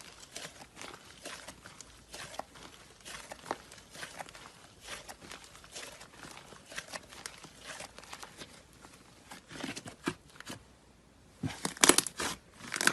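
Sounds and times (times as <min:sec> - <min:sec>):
slime crackling and popping: 0:00.0 - 0:08.6, 0:11.6 - 0:12.9.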